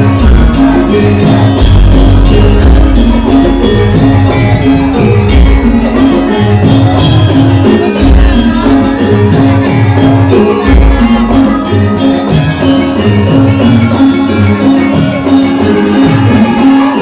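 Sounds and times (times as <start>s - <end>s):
quick percussion strokes: 0.0s - 17.0s
sustained pitched tones: 0.0s - 17.0s.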